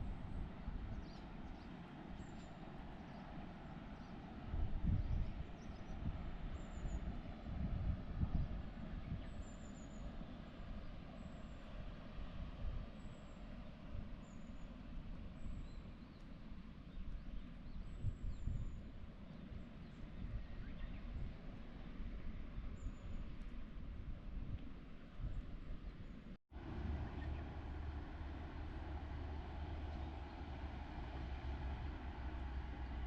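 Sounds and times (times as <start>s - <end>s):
wind buffeting microphone: 4.4s - 11.1s, 17.0s - 33.0s.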